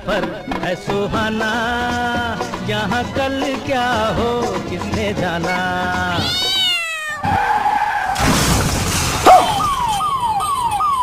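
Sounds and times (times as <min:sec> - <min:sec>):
falling siren-like tone: 0:09.3 - 0:11.0.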